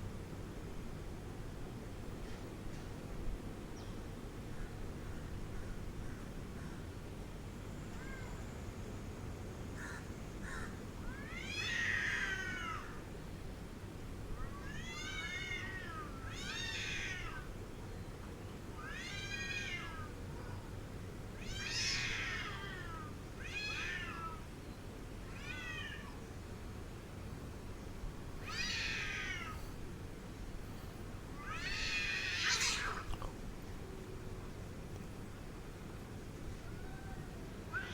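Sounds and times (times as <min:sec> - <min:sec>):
angry cat yowling: 0:31.4 - 0:33.4.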